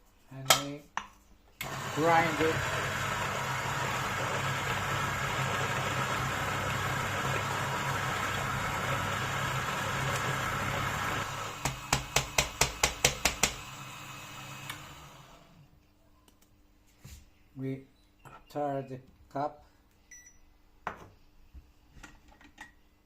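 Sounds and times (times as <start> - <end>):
coffee grinder motor grinding: 1.6 - 15.6.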